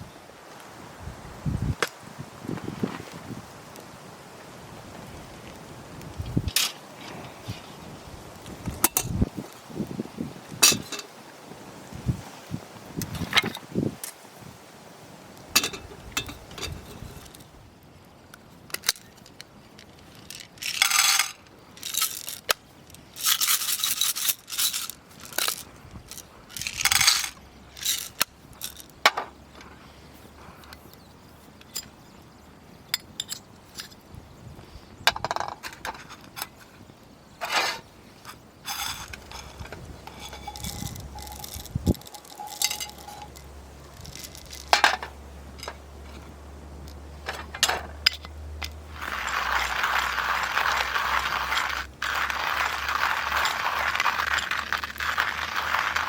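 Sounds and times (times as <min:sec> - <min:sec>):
rustling: 0:01.7 - 0:03.8, 0:15.3 - 0:32.0, 0:34.6 - 0:56.0
metal cookware clinking and scraping: 0:38.7 - 0:43.4.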